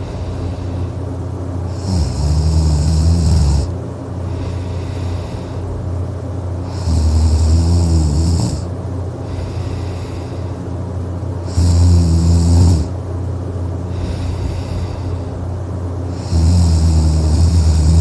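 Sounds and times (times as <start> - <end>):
person snoring: 1.7 - 5.6, 6.6 - 10.6, 11.4 - 13.0, 13.9 - 15.3, 16.1 - 18.0.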